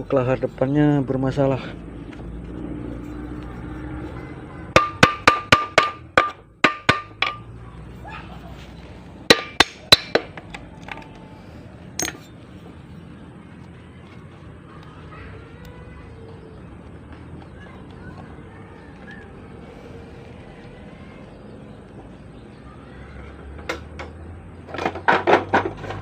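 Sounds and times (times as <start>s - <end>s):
hammer striking metal: 4.7s - 7.6s, 9.3s - 10.4s.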